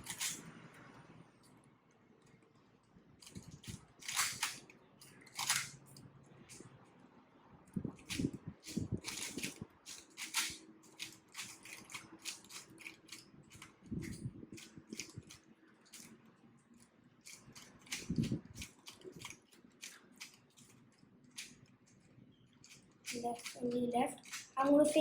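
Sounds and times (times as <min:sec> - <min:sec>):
plastic puzzle cube clicking: 0:00.0 - 0:00.4, 0:03.2 - 0:05.8, 0:08.0 - 0:16.1, 0:17.2 - 0:21.6, 0:22.7 - 0:24.5.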